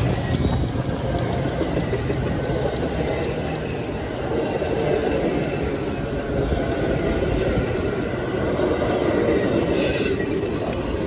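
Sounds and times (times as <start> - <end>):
train wheels rumbling on rails: 0.0 - 11.0
high wheel squeal: 7.2 - 11.0.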